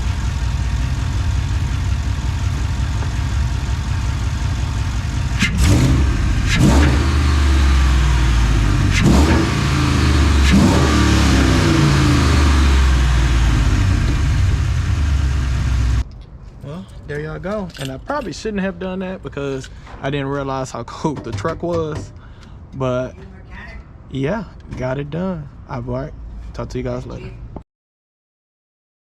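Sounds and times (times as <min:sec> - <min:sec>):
car engine idling and revving: 0:00.0 - 0:16.1.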